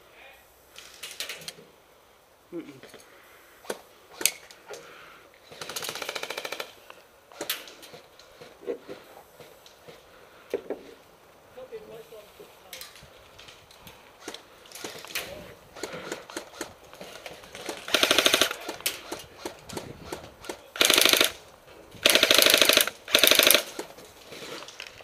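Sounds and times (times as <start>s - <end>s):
airsoft rifle firing bursts: 5.5s - 7.6s, 15.7s - 21.4s, 22.0s - 23.9s.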